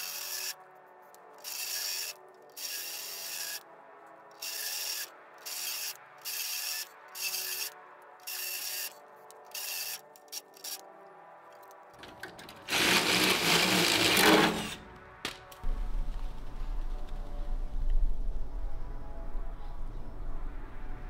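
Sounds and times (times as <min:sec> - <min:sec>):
hand tool rasping on metal: 0:12.7 - 0:14.8.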